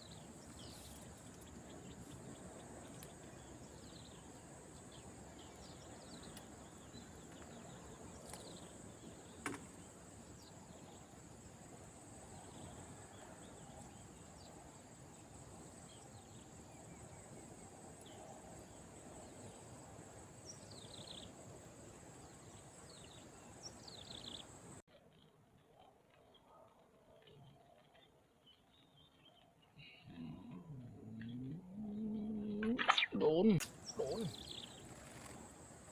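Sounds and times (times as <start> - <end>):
bird chirps: 26.2 - 35.3.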